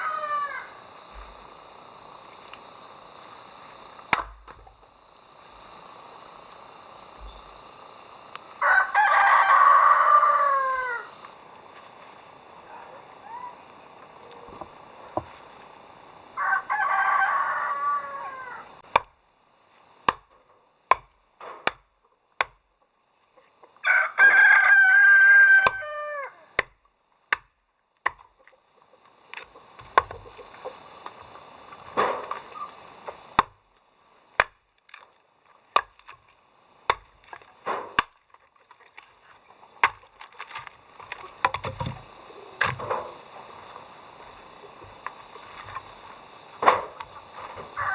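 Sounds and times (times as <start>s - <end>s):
rooster crowing: 0.0s - 0.8s, 8.6s - 11.3s, 16.4s - 18.8s, 23.8s - 26.6s, 47.6s - 47.9s.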